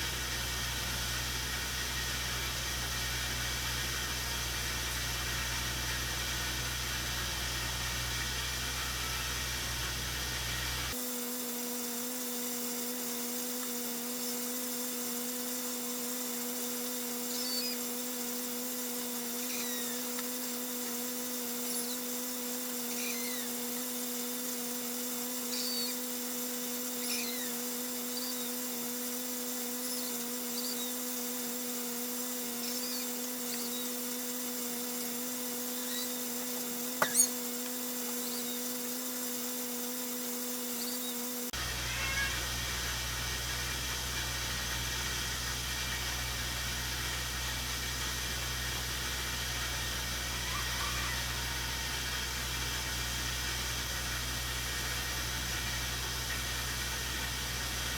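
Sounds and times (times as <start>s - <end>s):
steady two-tone hum: 0.0s - 57.9s
faint chirps: 17.2s - 18.0s, 19.4s - 20.6s, 22.9s - 23.6s, 25.4s - 26.1s, 26.9s - 31.1s, 32.5s - 39.0s.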